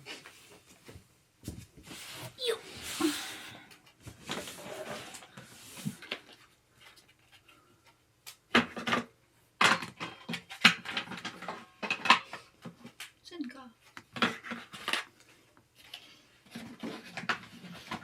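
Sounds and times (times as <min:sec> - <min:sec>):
clatter of hard parts handled: 0:06.0 - 0:13.2.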